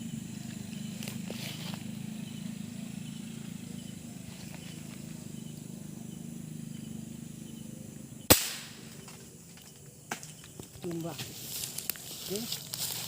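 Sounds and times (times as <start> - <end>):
chorus of night animals: 0.0 - 13.0
air rifle shot: 8.3 - 8.8.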